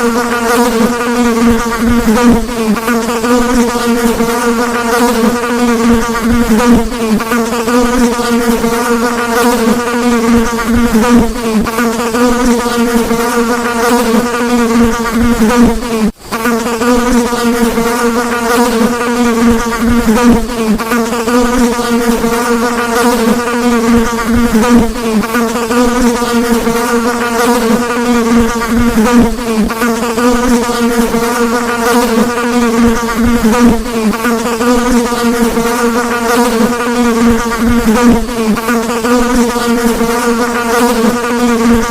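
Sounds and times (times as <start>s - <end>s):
housefly buzzing: 0.0s - 41.9s.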